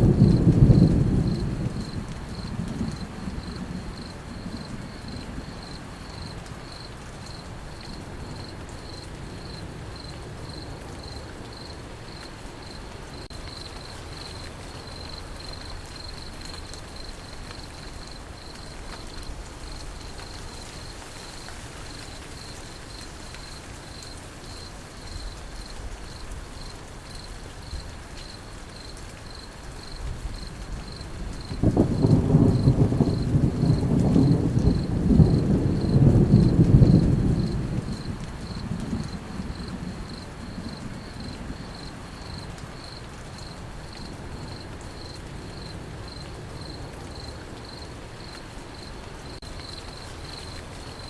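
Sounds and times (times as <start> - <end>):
low thunder rumble: 0.0 - 6.8, 29.9 - 46.8
crickets chirping: 0.0 - 51.0
rain hiss: 0.0 - 51.0.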